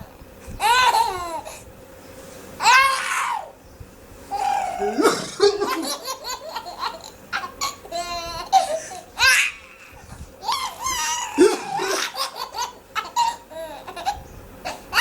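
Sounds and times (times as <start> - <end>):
baby laughing: 0.6 - 1.5, 4.4 - 15.0.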